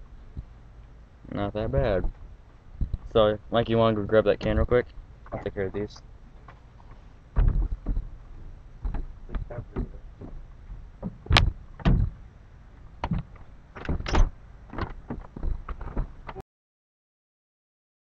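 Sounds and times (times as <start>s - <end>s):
gear handling knocks and scrapes: 5.4s - 16.4s.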